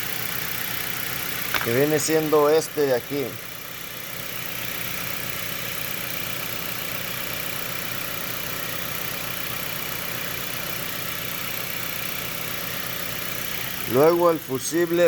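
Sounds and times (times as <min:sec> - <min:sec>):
car engine hum and whir: 0:00.0 - 0:15.0.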